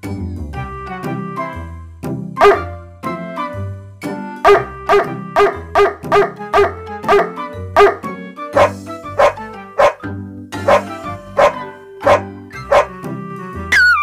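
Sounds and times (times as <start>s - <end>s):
rhythmic dog barks: 2.4s - 2.8s, 4.4s - 13.0s.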